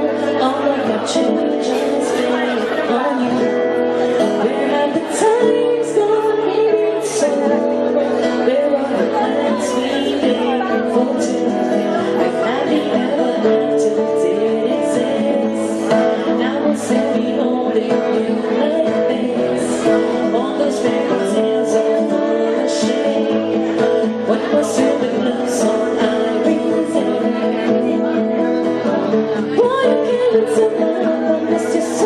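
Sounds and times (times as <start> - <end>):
person singing: 0.0 - 32.0
strummed acoustic guitar: 0.0 - 32.0.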